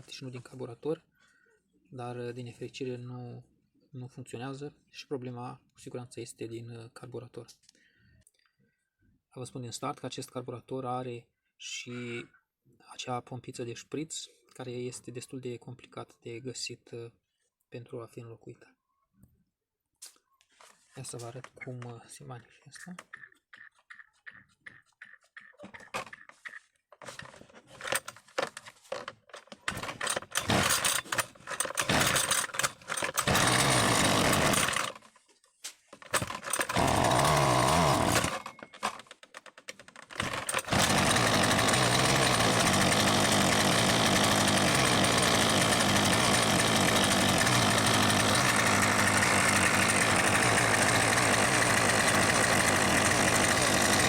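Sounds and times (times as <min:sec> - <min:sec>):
brushcutter engine starting: 0:27.1 - 0:35.1, 0:36.0 - 0:54.0.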